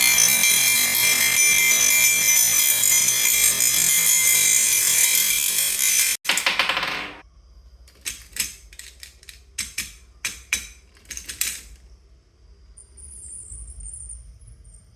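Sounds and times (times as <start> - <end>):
marbles clicking down wooden run: 5.8 - 7.2.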